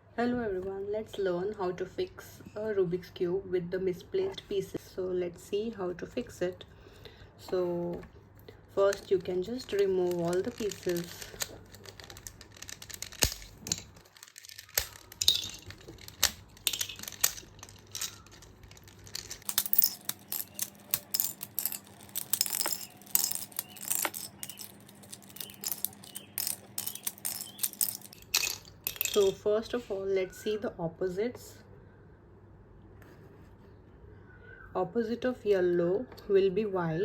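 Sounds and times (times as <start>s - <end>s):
plastic cube pieces clicking: 8.9s - 29.4s.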